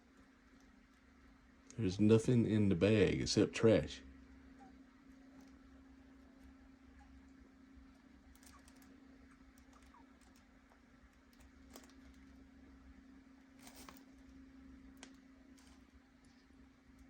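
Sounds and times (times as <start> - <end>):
steady low hum: 0.0 - 17.0
plastic bag crackling: 9.6 - 12.4, 13.5 - 17.0.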